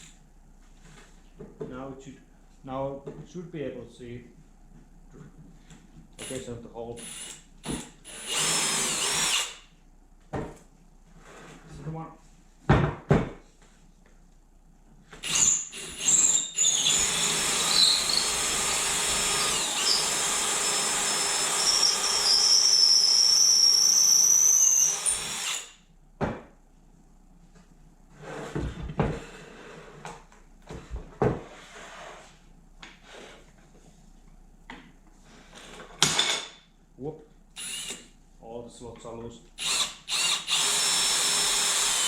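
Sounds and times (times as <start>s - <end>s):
power drill boring into wood: 8.0s - 9.6s, 15.2s - 25.8s, 37.6s - 38.1s, 39.6s - 42.0s.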